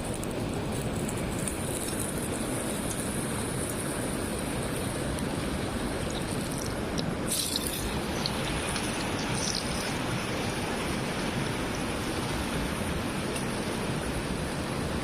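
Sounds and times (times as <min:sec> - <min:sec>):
river rushing: 0:00.3 - 0:15.0.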